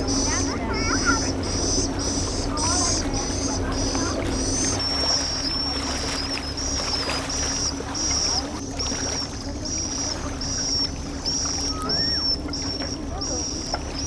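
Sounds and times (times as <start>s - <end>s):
rhythmic high-pitched chirping: 0.0s - 8.9s
low hum and rumble: 0.0s - 14.0s.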